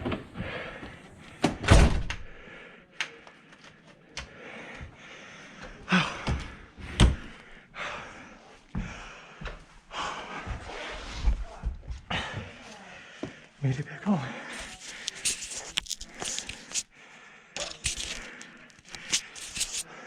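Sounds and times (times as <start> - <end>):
door banging shut: 1.6 - 2.2.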